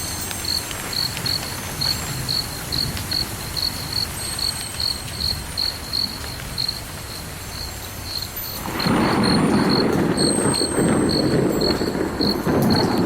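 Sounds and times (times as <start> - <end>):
cricket chirping: 0.0 - 13.0.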